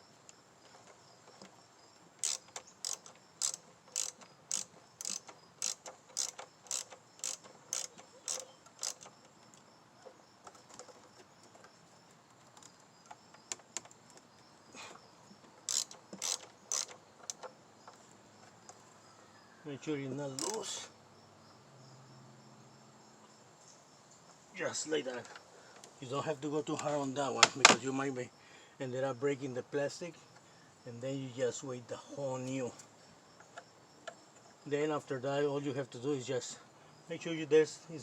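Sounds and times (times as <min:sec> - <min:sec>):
ratchet wrench clicking: 0:02.2 - 0:09.2, 0:15.6 - 0:17.5, 0:20.4 - 0:20.7.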